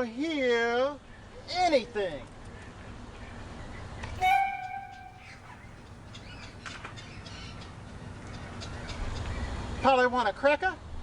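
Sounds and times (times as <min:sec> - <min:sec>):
steady horn-like tone: 0:04.2 - 0:05.4.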